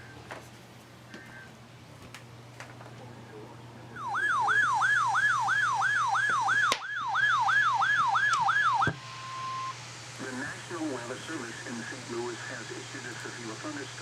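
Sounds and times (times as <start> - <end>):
electronic siren yelping: 4.0 - 9.8.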